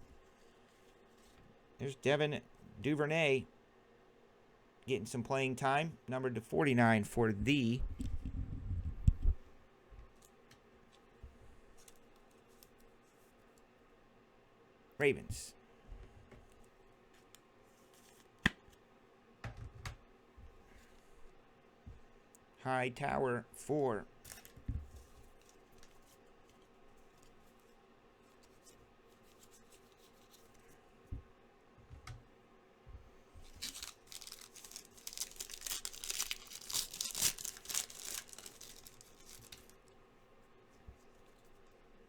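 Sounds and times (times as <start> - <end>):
trading cards handled on a table: 16.3 - 18.8, 24.2 - 30.8
trading cards rustling and clicking: 33.4 - 39.8.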